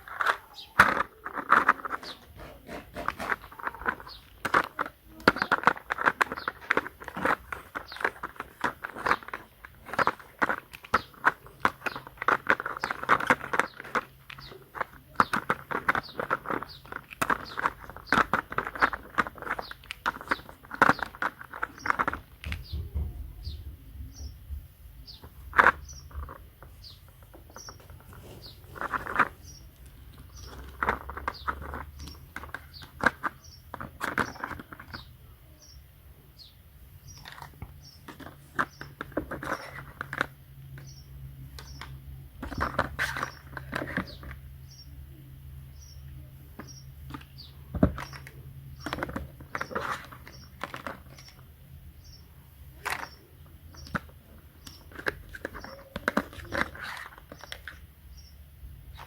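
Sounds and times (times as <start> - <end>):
small objects clicking and scraping: 0.0 - 22.7, 25.1 - 35.8, 37.0 - 44.8.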